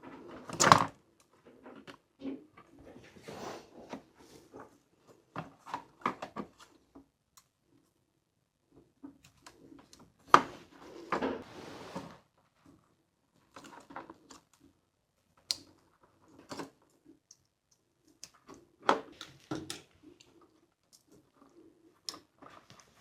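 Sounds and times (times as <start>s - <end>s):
scraping rustle: 10.5s - 12.3s.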